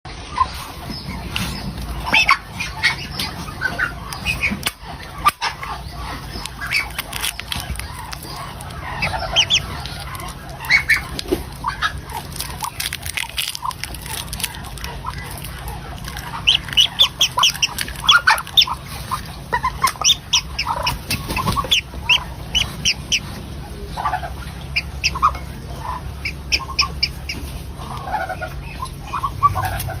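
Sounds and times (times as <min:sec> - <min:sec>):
ducklings peeping: 0:00.1 - 0:30.0
steady low hum: 0:00.1 - 0:30.0.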